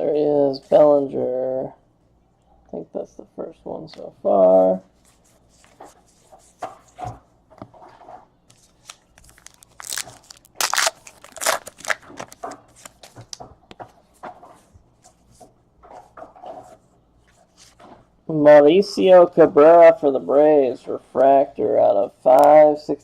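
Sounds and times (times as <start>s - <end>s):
wrappers rustling and crinkling: 8.5s - 13.4s.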